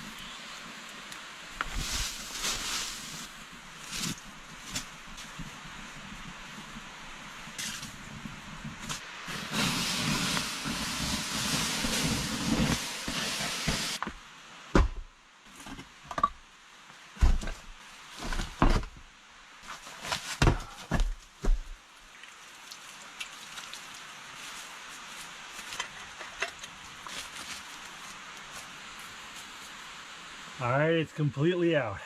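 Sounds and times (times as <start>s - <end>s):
water hissing on hot coals: 0.0s - 14.5s, 19.6s - 31.6s
knocks and thumps: 14.0s - 16.4s, 17.2s - 19.0s.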